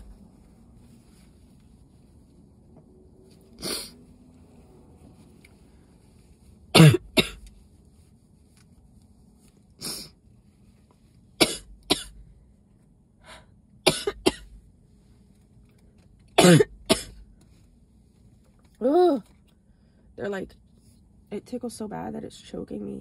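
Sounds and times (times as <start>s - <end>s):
woman coughing hard: 6.7s - 7.4s, 11.4s - 12.2s, 13.8s - 14.5s, 16.4s - 17.2s.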